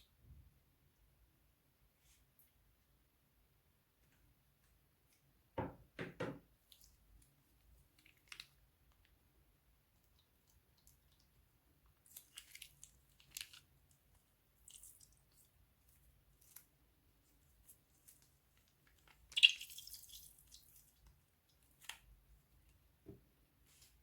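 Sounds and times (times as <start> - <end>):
slime squishing: 6.6 - 9.2, 9.9 - 22.8.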